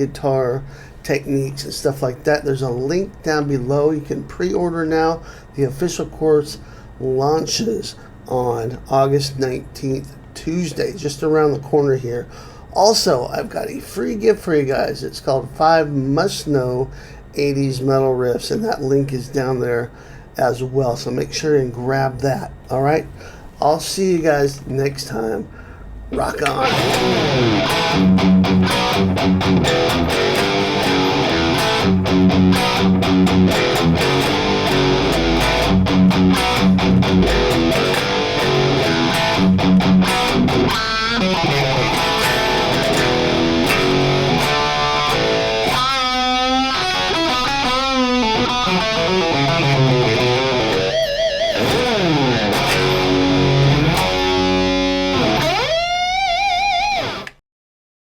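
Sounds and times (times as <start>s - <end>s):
distorted electric guitar riff: 26.1s - 57.4s.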